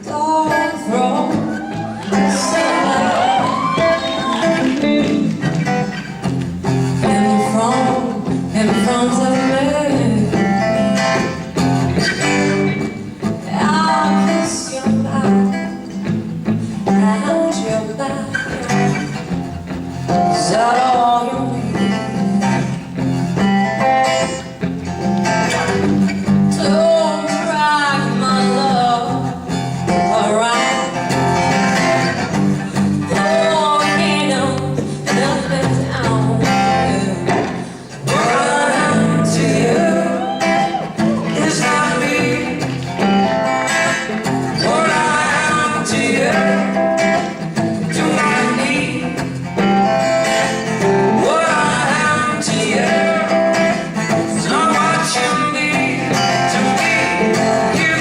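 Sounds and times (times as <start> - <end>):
person singing: 0.0 - 5.8, 6.9 - 16.1, 16.8 - 19.2, 20.1 - 23.5, 26.5 - 31.9, 33.0 - 58.0
guitar playing: 0.0 - 58.0.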